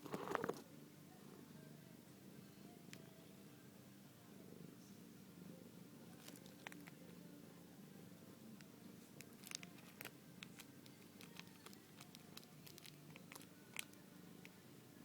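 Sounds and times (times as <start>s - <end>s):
cat purring: 0.0s - 0.7s.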